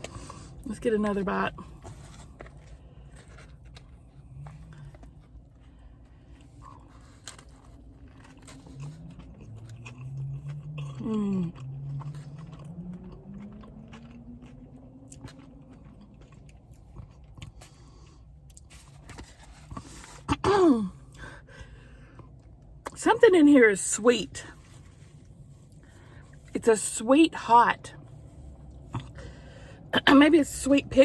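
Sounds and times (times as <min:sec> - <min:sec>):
person chewing crunchy food: 0:00.0 - 0:00.7, 0:01.3 - 0:20.4, 0:28.0 - 0:29.9.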